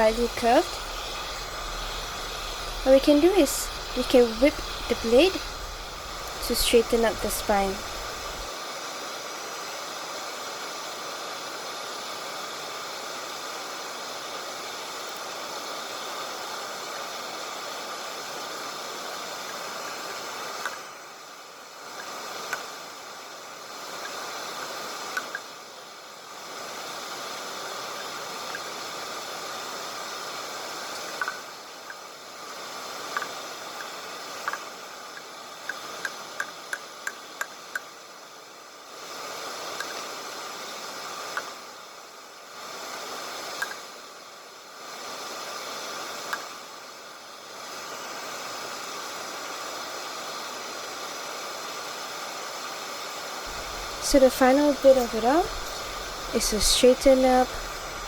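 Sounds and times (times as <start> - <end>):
forge hissing: 0.0 - 25.4, 47.1 - 58.0.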